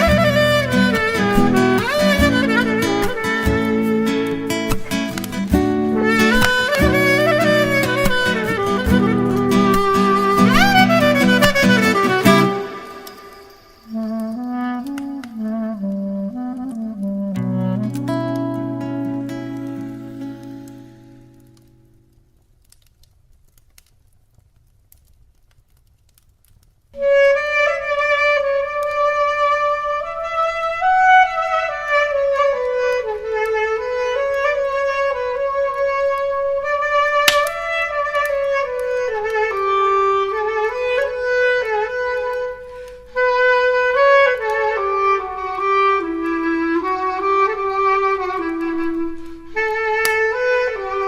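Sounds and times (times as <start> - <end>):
clarinet melody: 0.0 - 21.7, 27.0 - 51.0.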